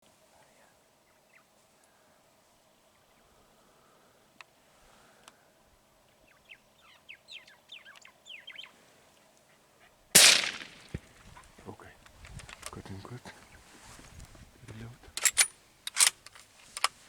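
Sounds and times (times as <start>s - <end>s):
bird chirping: 6.2s - 8.8s
rifle shot: 10.2s - 11.2s.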